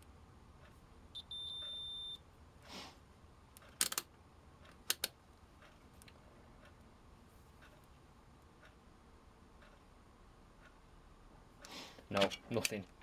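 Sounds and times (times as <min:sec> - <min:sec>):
multimeter high beep: 0:01.2 - 0:02.2
handling clicks: 0:04.7 - 0:05.2.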